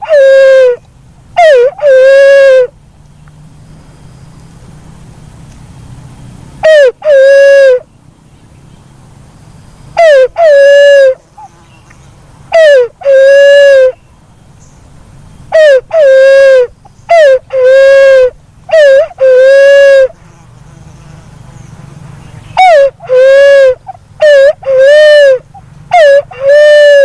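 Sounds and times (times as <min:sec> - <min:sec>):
dove hooting: 0:00.0 - 0:02.8, 0:06.6 - 0:07.9, 0:09.9 - 0:11.6, 0:12.5 - 0:14.0, 0:15.4 - 0:20.2, 0:22.4 - 0:27.0.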